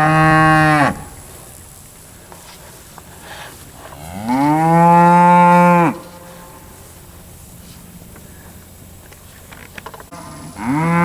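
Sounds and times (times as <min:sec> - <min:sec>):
steer mooing: 0:00.0 - 0:01.2, 0:03.9 - 0:06.6, 0:10.1 - 0:11.0.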